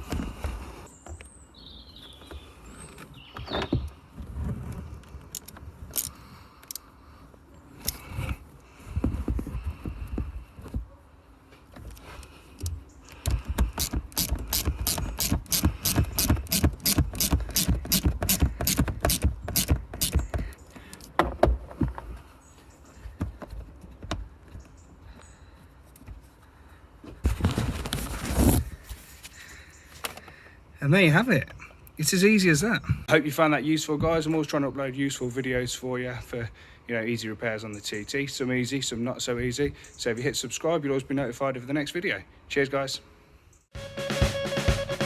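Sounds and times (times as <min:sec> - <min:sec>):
hand tool scraping: 0:11.8 - 0:20.6
fast run of sharp clicks: 0:13.1 - 0:20.6.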